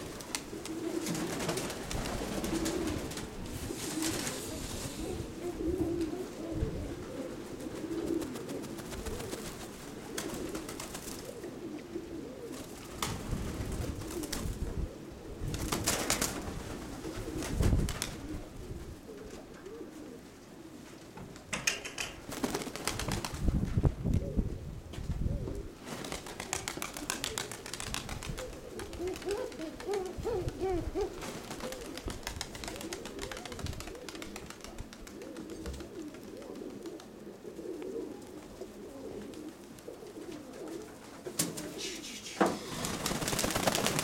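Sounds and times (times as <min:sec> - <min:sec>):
pigeons cooing: 0:00.0 - 0:21.0, 0:24.0 - 0:44.0
wind rumbling on microphone: 0:04.4 - 0:07.1, 0:13.0 - 0:19.0, 0:22.9 - 0:25.8, 0:27.8 - 0:31.2, 0:33.3 - 0:34.0.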